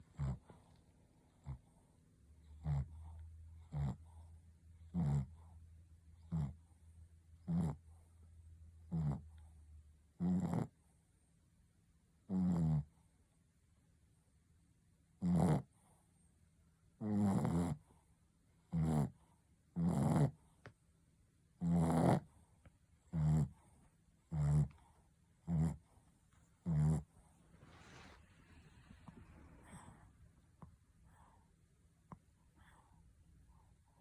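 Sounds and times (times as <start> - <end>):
dog snoring: 0.0 - 5.6, 6.2 - 6.8, 7.4 - 8.1, 8.8 - 10.9, 12.2 - 13.1, 15.2 - 16.0, 17.0 - 18.0, 18.6 - 20.5, 21.6 - 31.5.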